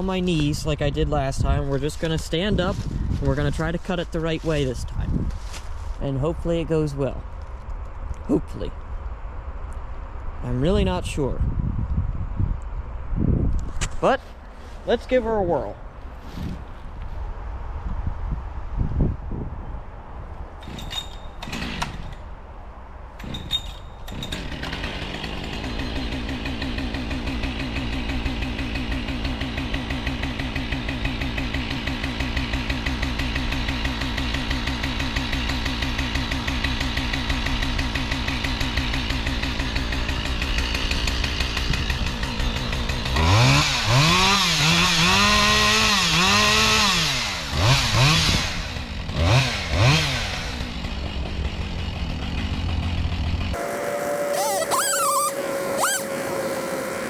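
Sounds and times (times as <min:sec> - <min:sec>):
chainsaw revving: 0:24.1 - 0:57.0
chainsaw idling: 0:24.2 - 0:57.0.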